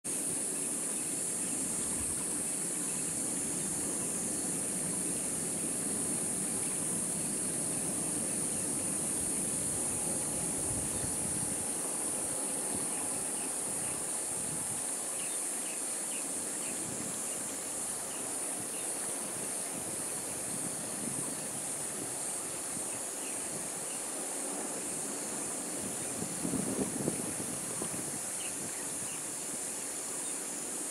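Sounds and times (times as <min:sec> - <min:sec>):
insects chirping chorus: 0:00.1 - 0:30.9
ocean surf: 0:03.4 - 0:26.4.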